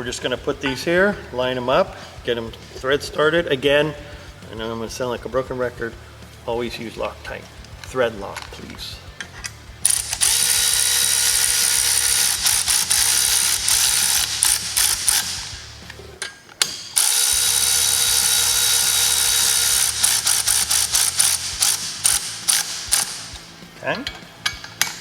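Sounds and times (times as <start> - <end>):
ratchet clicks: 9.2 - 23.5
cordless ratchet motor whirring: 9.8 - 15.7, 17.0 - 23.4.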